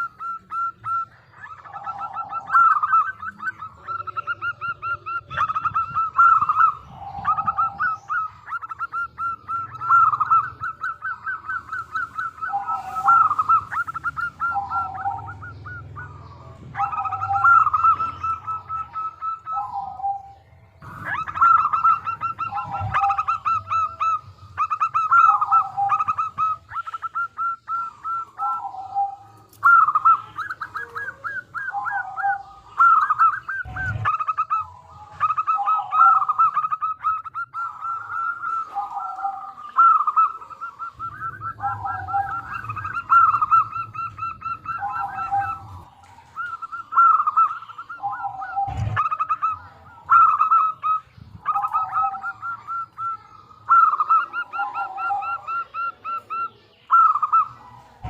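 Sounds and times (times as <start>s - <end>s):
dove cooing: 0.0s - 58.0s.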